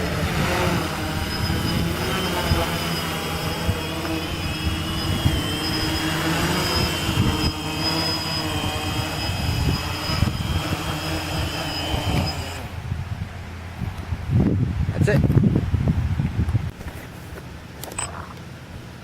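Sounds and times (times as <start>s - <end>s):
drone motors whining: 0.0s - 12.8s
wind buffeting microphone: 0.0s - 17.0s.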